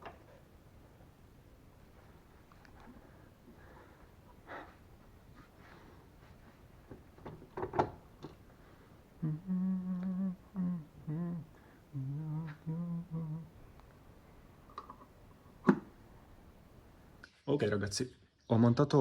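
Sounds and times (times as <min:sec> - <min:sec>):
person humming a tune: 0:09.2 - 0:13.6.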